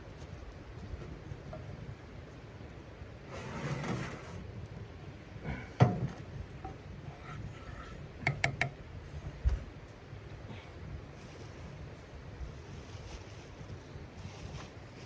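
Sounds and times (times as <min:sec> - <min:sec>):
rustle: 0:03.2 - 0:04.8, 0:09.0 - 0:15.0.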